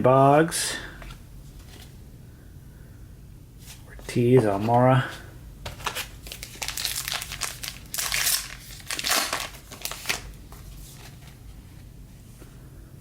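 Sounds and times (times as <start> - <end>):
wrapper crinkling: 5.8 - 11.4.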